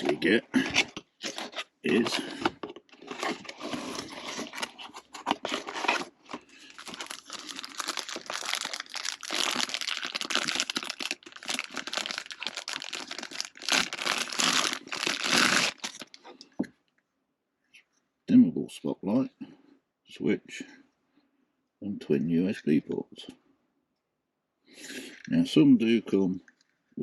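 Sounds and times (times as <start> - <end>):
packaging crinkling and rustling: 0.0 - 16.5.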